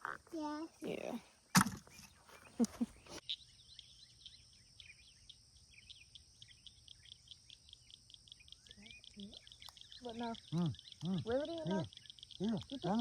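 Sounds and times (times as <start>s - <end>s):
birds chirping: 0.0s - 13.0s.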